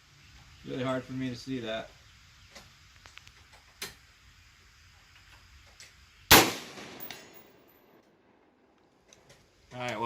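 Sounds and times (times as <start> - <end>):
loud gunshot with echo: 6.3 - 7.4.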